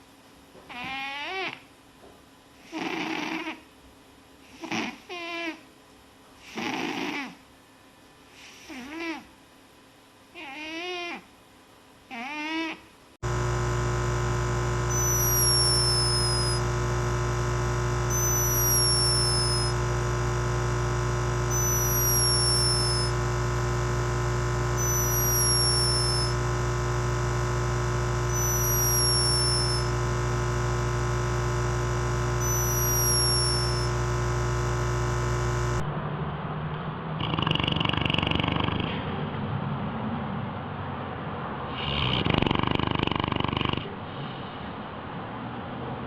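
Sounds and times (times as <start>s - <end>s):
electronic drone: 13.2s - 35.9s.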